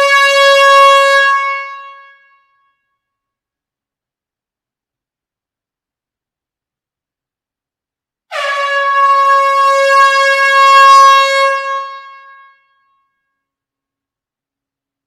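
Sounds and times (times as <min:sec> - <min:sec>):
air horn blast: 0:08.3 - 0:12.6.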